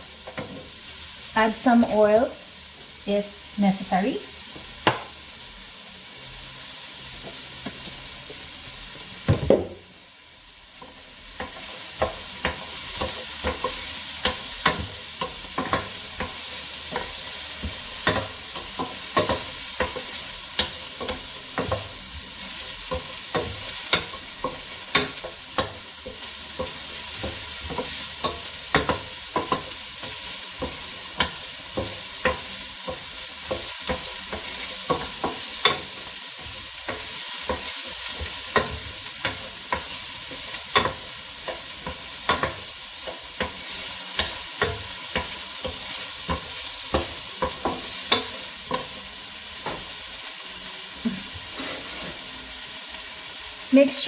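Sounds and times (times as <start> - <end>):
onions sizzling in a frying pan: 0.0 - 54.0
knock on a pan: 9.2 - 9.9
utensil scraping a pan: 51.4 - 52.4.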